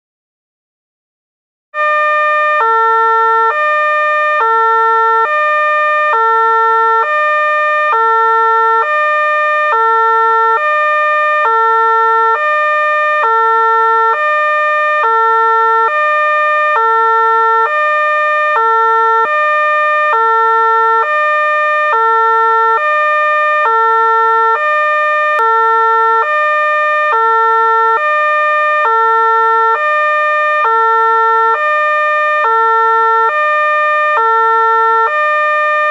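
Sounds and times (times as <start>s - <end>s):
two-tone fire engine siren: 1.8s - 35.9s.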